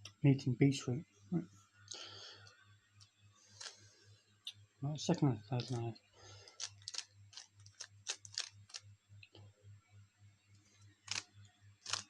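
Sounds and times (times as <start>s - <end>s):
faint low pulsing hum: 0.0s - 12.0s
puzzle cube layers clicking: 6.6s - 8.8s.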